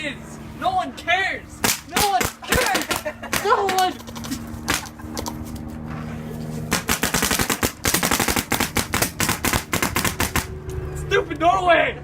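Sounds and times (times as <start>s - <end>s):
rapid machine-gun fire: 6.7s - 10.5s.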